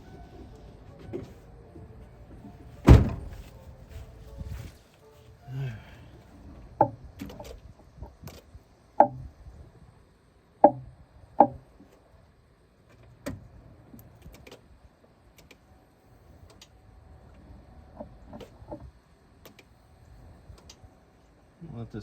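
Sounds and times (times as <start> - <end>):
sharp knocks: 9.0 - 9.2, 10.6 - 11.6.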